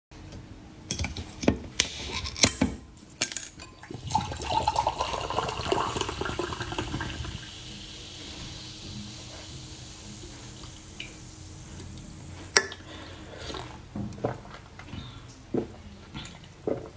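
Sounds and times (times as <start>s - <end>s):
juice pouring into a glass: 3.8s - 12.4s.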